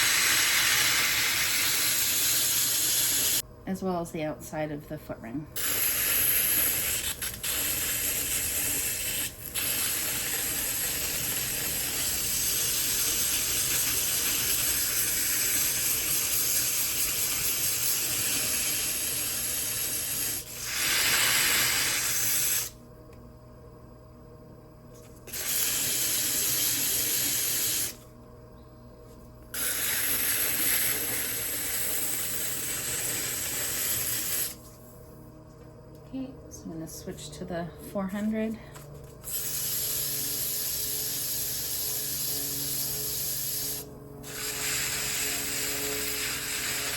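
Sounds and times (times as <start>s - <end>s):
sanding pad rasping on ceramic: 0.0s - 3.4s, 5.6s - 22.7s, 25.3s - 28.0s, 39.2s - 46.9s.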